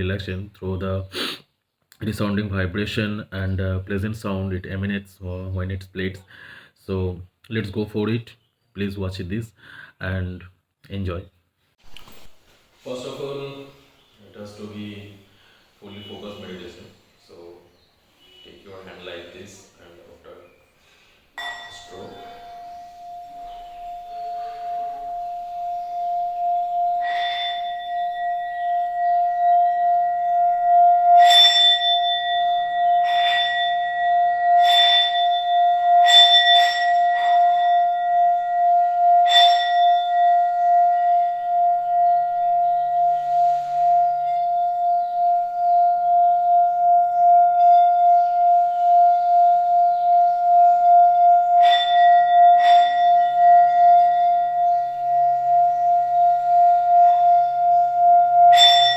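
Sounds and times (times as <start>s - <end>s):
mallet tapping singing bowl: 21.4s - 30.0s
singing bowl ringing: 21.4s - 58.9s.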